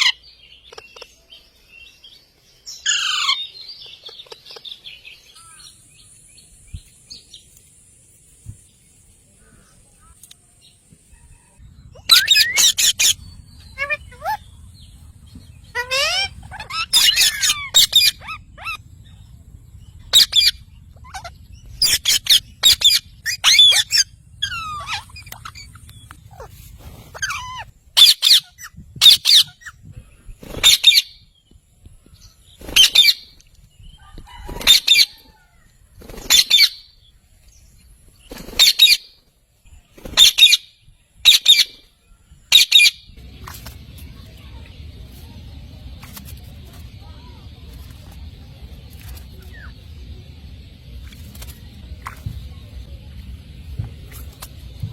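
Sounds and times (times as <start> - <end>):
parakeets screeching: 2.8 - 3.5, 12.0 - 18.8, 20.1 - 29.7
faint low hum: 3.9 - 54.9.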